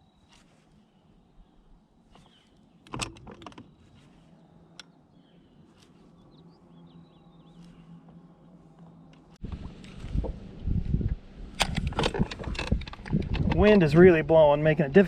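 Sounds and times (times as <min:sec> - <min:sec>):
bird chirps: 0:00.0 - 0:02.9, 0:03.6 - 0:08.2
low steady hum: 0:00.0 - 0:15.0
sharp clicks and knocks: 0:02.8 - 0:03.7, 0:11.6 - 0:13.8.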